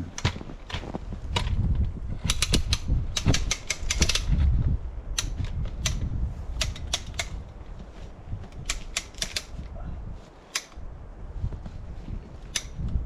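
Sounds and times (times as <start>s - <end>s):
felling jack clicking and ratcheting: 0.1s - 4.4s, 5.1s - 7.5s, 8.5s - 9.7s, 10.5s - 10.8s.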